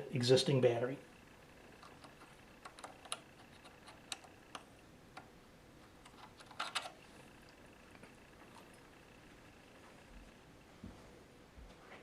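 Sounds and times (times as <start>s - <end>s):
small clicks and ticks: 1.8s - 5.3s.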